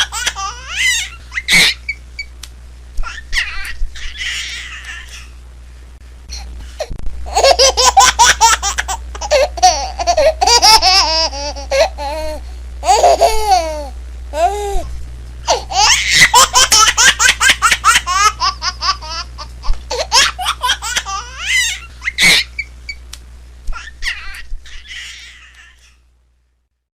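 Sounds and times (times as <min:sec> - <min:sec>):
baby laughing: 0:00.0 - 0:02.0, 0:03.0 - 0:05.3, 0:07.3 - 0:14.9, 0:15.5 - 0:22.7, 0:23.7 - 0:26.0.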